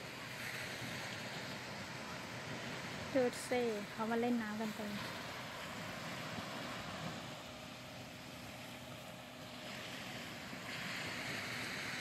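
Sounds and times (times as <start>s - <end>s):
faint steady hum: 0.0s - 12.0s
water: 0.0s - 12.0s
wind: 0.0s - 12.0s.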